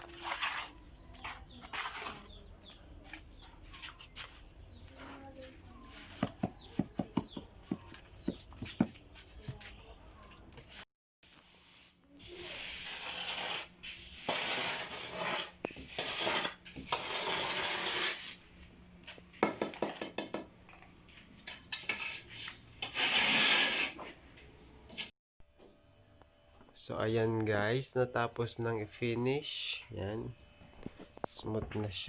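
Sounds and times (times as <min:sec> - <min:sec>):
tool scraping wet cement: 0:00.0 - 0:04.4, 0:11.6 - 0:18.4, 0:21.5 - 0:24.2.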